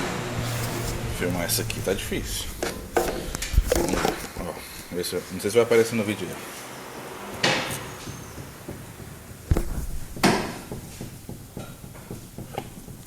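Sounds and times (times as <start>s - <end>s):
ball joint knocking: 7.7s - 13.0s.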